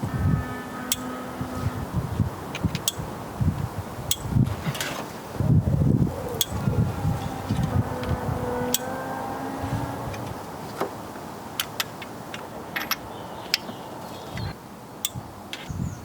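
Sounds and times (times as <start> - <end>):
torque wrench clicks: 4.1 - 4.4.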